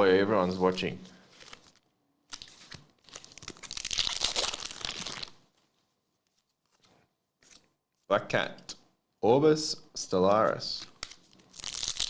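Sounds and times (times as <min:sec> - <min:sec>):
wrapper tearing and crinkling: 0:01.4 - 0:05.5, 0:11.0 - 0:12.0.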